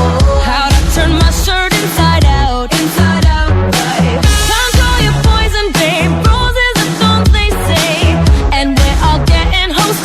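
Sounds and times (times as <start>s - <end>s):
person singing: 0.0s - 10.0s
pop backing music with beat: 0.0s - 10.0s.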